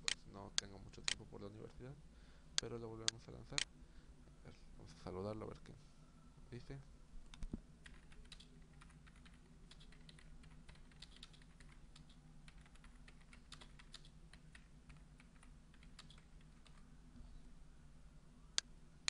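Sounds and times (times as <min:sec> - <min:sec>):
low steady hum: 0:00.0 - 0:19.0
keyboard typing clicks: 0:07.3 - 0:16.8.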